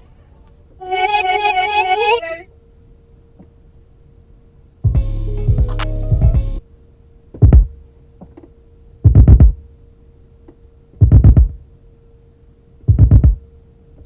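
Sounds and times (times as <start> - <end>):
faint steady hum: 0.0 - 14.0
booming electronic drum hits: 7.4 - 7.7, 9.1 - 9.6, 11.0 - 11.6, 12.9 - 13.4.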